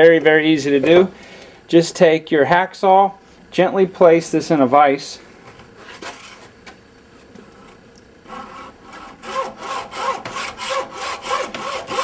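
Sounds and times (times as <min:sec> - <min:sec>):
hacksaw cutting cable: 0:08.3 - 0:12.0.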